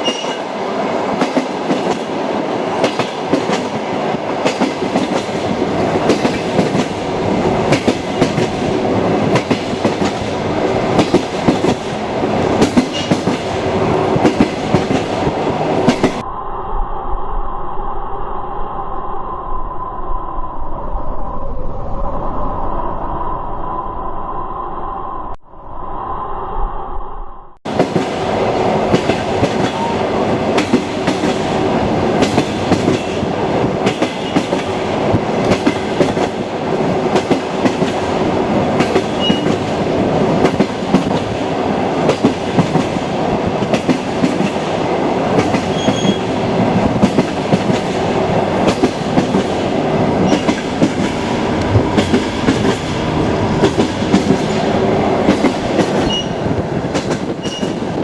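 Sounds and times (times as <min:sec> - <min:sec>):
train wheels clattering over rails: 0:01.1 - 0:16.2, 0:27.7 - 0:58.0.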